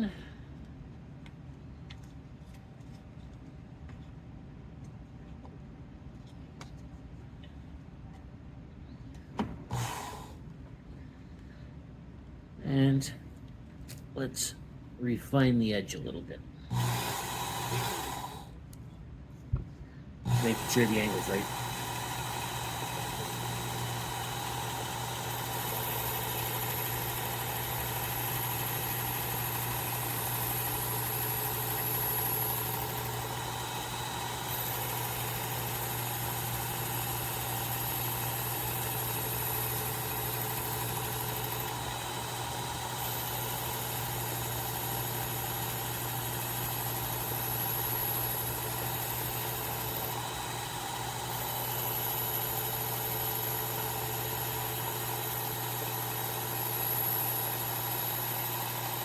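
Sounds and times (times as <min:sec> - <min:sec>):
belt sharpener motor hum: 0:09.7 - 0:10.4, 0:16.7 - 0:18.6, 0:20.2 - 0:59.0.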